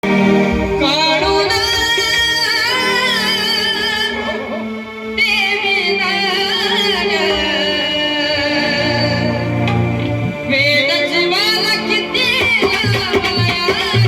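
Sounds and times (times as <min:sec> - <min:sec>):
musical accompaniment: 0:00.0 - 0:14.0.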